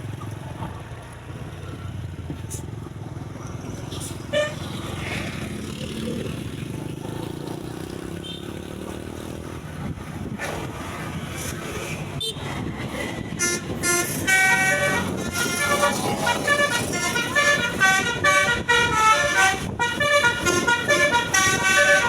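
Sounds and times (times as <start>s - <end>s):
road noise: 0.0s - 22.0s
vehicle engines rumbling past: 0.0s - 22.0s
multi-tone bus horn: 4.0s - 4.8s, 12.2s - 22.0s.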